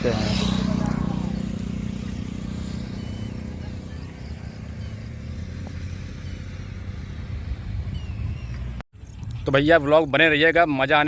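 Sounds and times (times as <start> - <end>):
vehicle engine low rumble: 0.0 - 9.9
faint bird chirps: 2.6 - 6.6.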